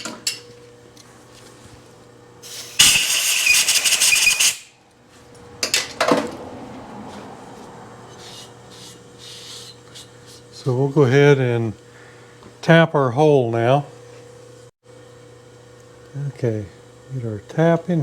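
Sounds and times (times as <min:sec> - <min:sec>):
compressed air blow gun hiss: 0:02.4 - 0:04.7.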